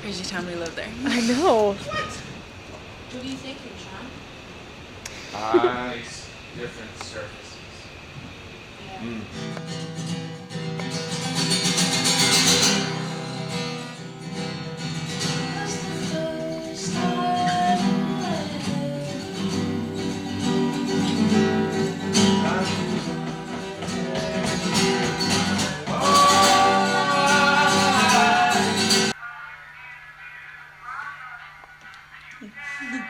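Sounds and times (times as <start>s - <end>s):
acoustic guitar folk music: 9.1s - 29.2s
person singing: 15.4s - 31.0s.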